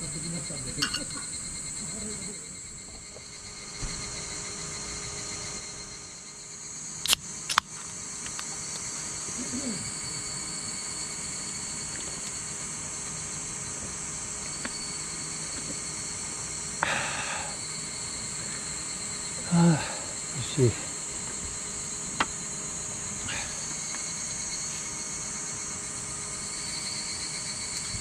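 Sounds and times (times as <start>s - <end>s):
insect chorus drones: 0.0s - 28.0s
sharp clicks: 7.0s - 8.5s.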